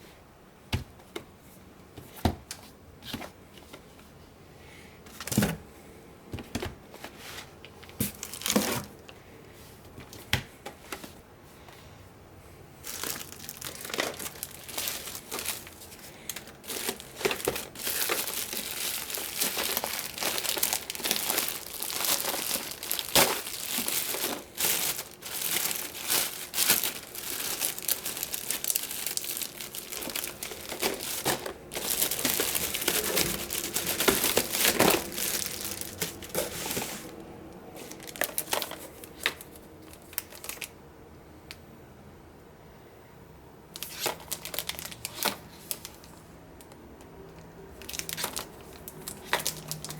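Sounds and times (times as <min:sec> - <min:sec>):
card packs crinkled and torn: 0:07.8 - 0:09.1, 0:12.8 - 0:40.8, 0:43.8 - 0:49.9.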